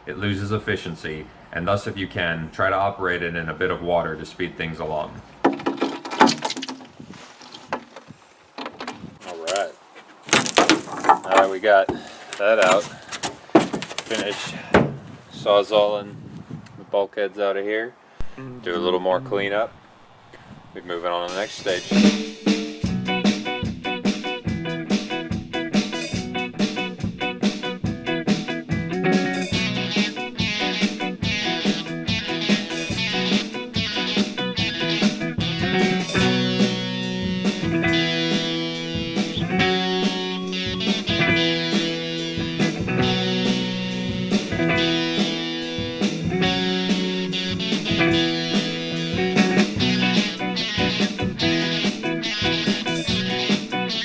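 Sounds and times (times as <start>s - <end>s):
blues electric guitar: 21.4s - 54.0s.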